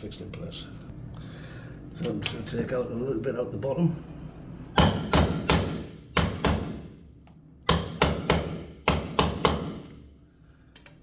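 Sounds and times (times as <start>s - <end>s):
chisel struck into wood: 4.8s - 6.8s, 7.6s - 9.9s.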